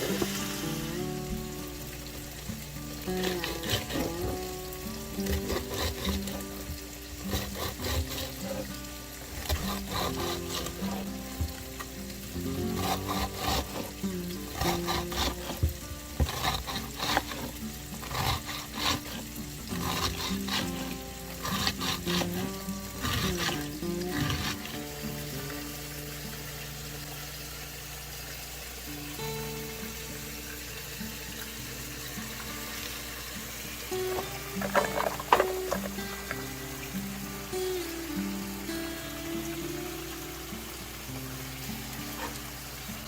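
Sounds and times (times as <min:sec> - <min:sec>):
soft background music: 0:00.0 - 0:28.0, 0:28.8 - 0:43.0
meat sizzling in oil: 0:00.0 - 0:43.0
utensil scraping and clicking: 0:03.1 - 0:04.4, 0:05.2 - 0:24.9, 0:34.1 - 0:36.1.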